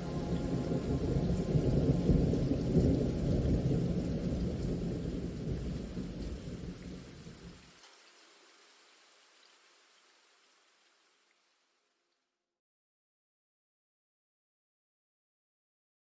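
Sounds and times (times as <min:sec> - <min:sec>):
rolling thunder rumble: 0:00.0 - 0:07.6
steady rain: 0:00.0 - 0:11.8.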